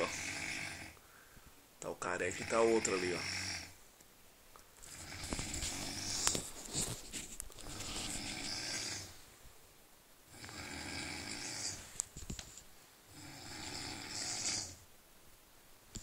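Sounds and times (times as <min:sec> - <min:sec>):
man snoring: 0:00.0 - 0:01.0, 0:02.2 - 0:03.8, 0:04.9 - 0:06.4, 0:07.6 - 0:09.2, 0:10.3 - 0:11.9, 0:13.1 - 0:14.8.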